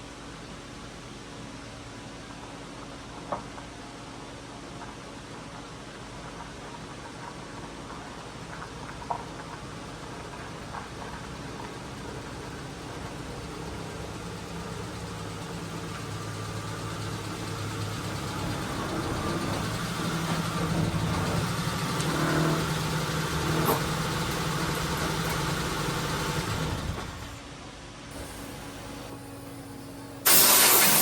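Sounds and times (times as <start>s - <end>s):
car engine running: 8.4s - 27.4s, 28.1s - 30.6s.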